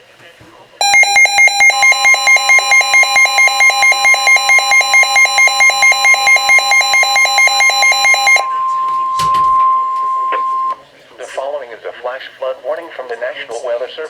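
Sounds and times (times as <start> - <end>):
rapid two-tone alarm beeping: 0.8 - 10.8
steady alert tone: 0.8 - 10.8.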